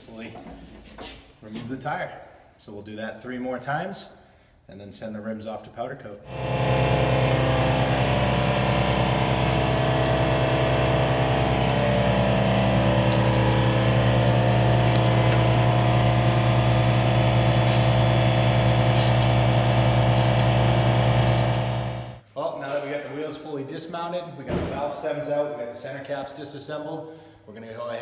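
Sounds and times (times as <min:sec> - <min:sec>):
motor humming: 0:06.3 - 0:22.2.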